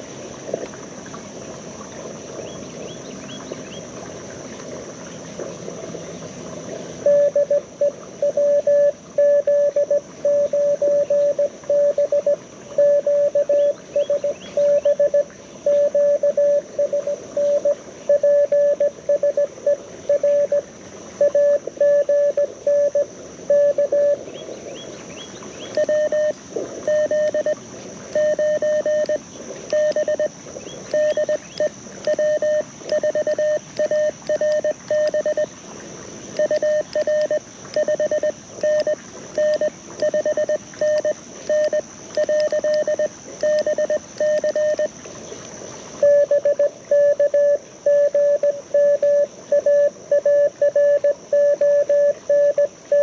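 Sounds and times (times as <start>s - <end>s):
creek water running: 0.0s - 53.0s
steady high hiss: 0.0s - 53.0s
morse code tones: 7.0s - 19.5s, 20.1s - 20.6s, 21.2s - 24.2s, 25.7s - 30.3s, 30.9s - 35.5s, 36.4s - 44.9s, 46.0s - 53.0s.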